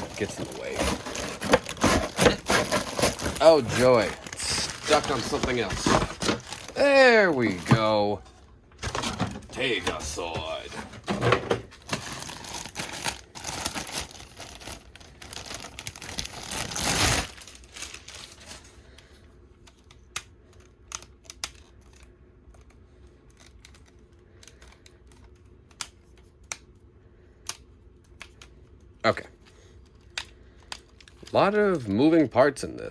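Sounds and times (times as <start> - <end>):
packaging rustling and crinkling: 0.0 - 8.2, 8.8 - 18.8.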